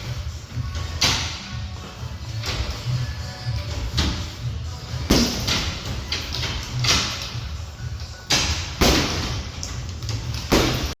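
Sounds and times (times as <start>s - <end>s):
faint music: 0.0s - 11.0s
punches thudding on padded target: 5.1s - 5.8s, 8.3s - 9.4s, 10.5s - 11.0s.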